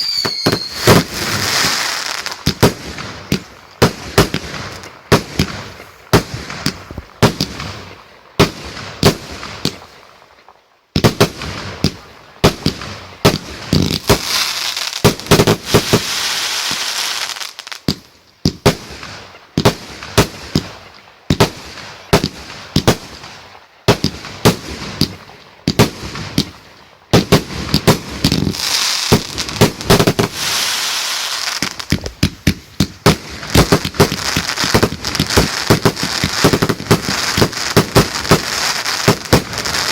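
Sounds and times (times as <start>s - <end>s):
firework bangs: 0.0s - 9.9s, 11.0s - 39.9s
firework crackling: 0.0s - 9.9s, 11.0s - 18.0s, 27.2s - 39.9s.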